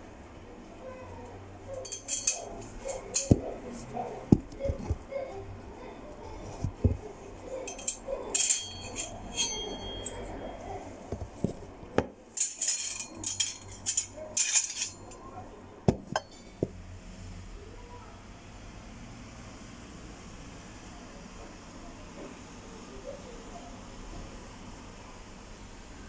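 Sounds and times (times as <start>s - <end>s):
small hard objects clinking: 12.4s - 15.2s.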